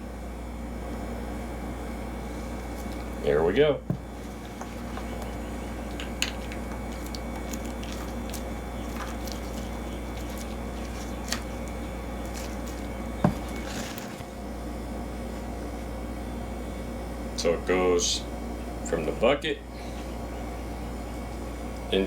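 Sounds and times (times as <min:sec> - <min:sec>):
steady low hum: 0:00.0 - 0:22.0
plastic jars and lids clicking: 0:04.6 - 0:11.5.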